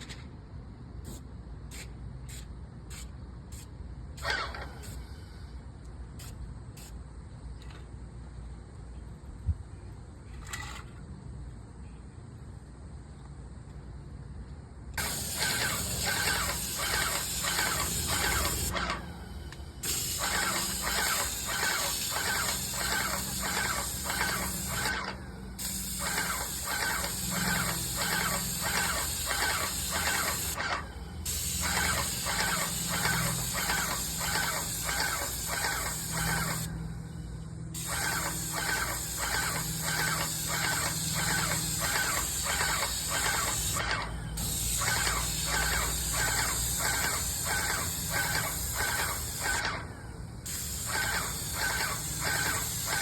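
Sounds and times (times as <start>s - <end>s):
paint sprayer hissing: 1.1s - 5.2s, 6.2s - 7.0s, 15.0s - 36.8s, 37.8s - 53.0s.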